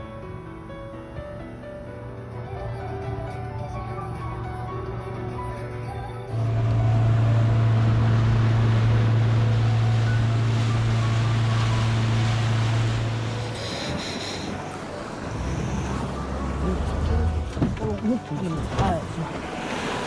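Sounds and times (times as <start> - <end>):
boat engine running: 6.0 - 20.0
rush of wind and water: 6.3 - 20.0.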